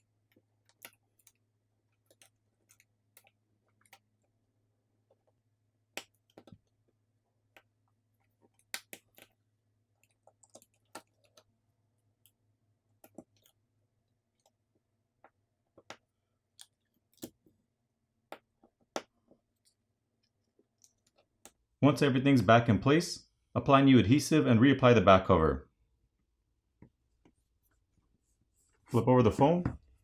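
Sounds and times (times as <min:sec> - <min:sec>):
small phone parts clicking and tapping: 0:00.2 - 0:04.3, 0:05.1 - 0:06.7, 0:07.5 - 0:09.4, 0:10.0 - 0:11.5, 0:13.0 - 0:13.6, 0:15.2 - 0:17.5.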